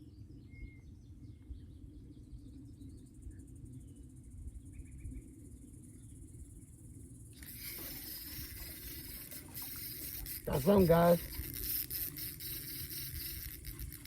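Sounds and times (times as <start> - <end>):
high insect trill: 5.9 - 14.0.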